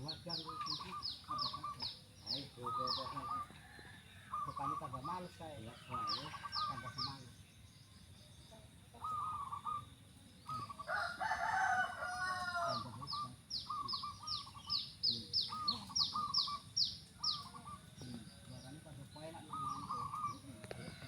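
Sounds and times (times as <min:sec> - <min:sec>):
doves cooing: 0:00.0 - 0:07.3, 0:08.6 - 0:21.0
small bird chirping: 0:00.0 - 0:21.0
rooster crowing: 0:10.8 - 0:13.1.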